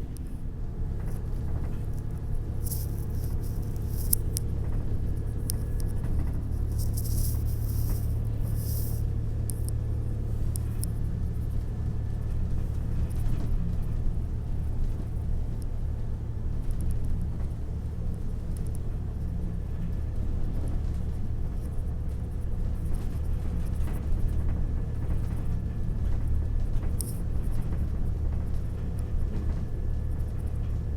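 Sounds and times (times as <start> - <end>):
car engine and road noise: 0.0 - 30.9
light ticks: 1.0 - 11.6, 16.6 - 17.6, 18.5 - 19.4, 20.6 - 30.8.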